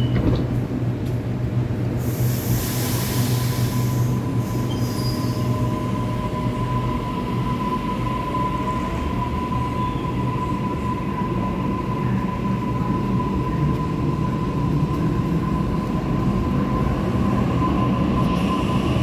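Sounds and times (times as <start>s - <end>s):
electric train rumbling: 0.0s - 19.0s
train high-pitched squeal: 2.0s - 14.6s, 15.3s - 19.0s.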